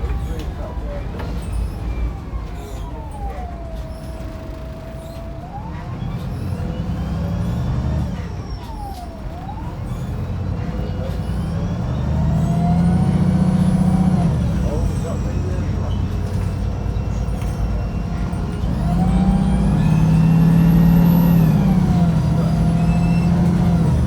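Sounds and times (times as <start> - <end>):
bus engine rumbling: 0.0 - 24.0.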